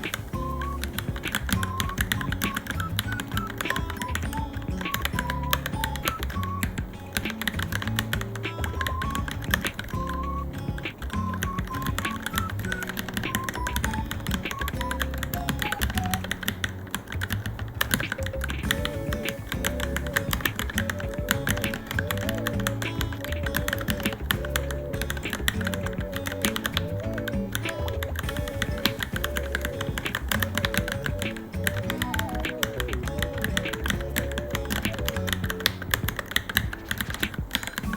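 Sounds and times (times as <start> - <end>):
background music: 0.0 - 37.9.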